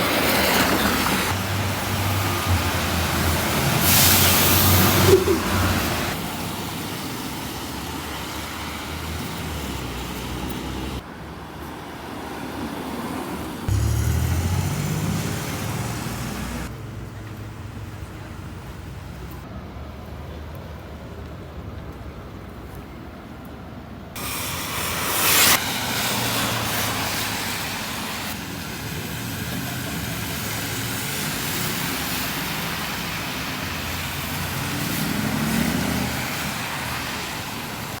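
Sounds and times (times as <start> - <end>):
tyres hissing on wet road: 0.0 - 19.3, 24.2 - 38.0
engine rumble: 13.7 - 22.7.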